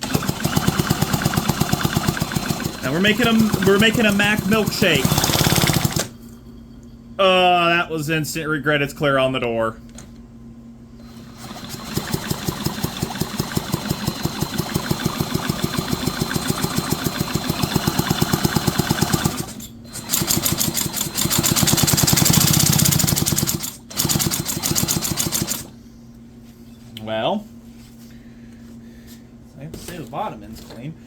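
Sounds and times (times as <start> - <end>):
chainsaw engine cranking: 0.0 - 6.1, 11.4 - 25.7.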